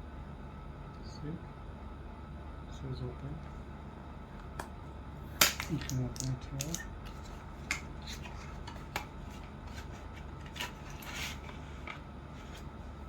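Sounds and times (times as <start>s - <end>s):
packaging rustling: 7.1s - 12.7s.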